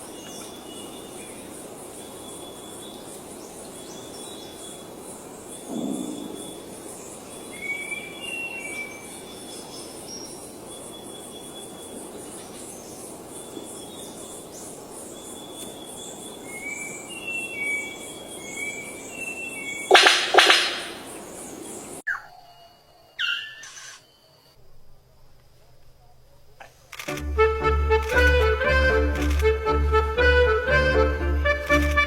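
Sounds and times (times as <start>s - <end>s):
insects buzzing: 0.0s - 32.0s
birds whistling: 5.4s - 13.0s, 13.7s - 24.2s.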